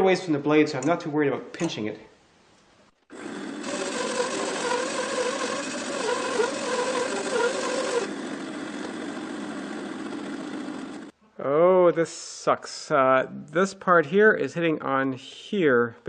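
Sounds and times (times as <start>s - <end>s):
bandsaw cutting through log: 3.1s - 11.1s.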